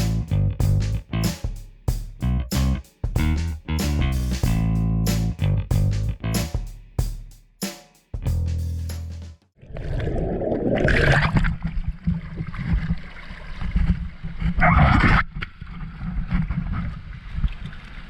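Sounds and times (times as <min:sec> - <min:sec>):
wind rumbling on microphone: 0:09.8 - 0:18.0.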